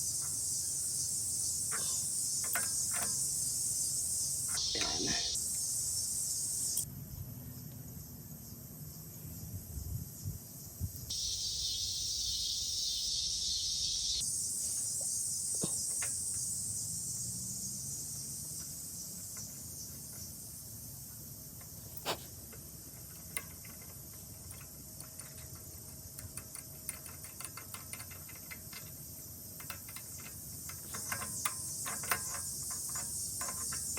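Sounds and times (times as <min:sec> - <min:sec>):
insects chirring: 0:00.0 - 0:33.9
faint clicks and knocks: 0:22.5 - 0:33.9.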